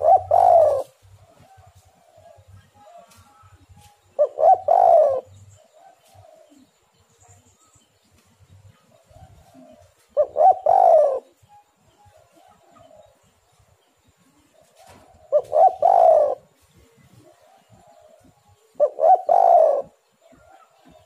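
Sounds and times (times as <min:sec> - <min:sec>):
dove cooing: 0:00.0 - 0:03.0, 0:04.2 - 0:06.8, 0:08.9 - 0:11.5, 0:14.6 - 0:16.6, 0:17.2 - 0:21.0.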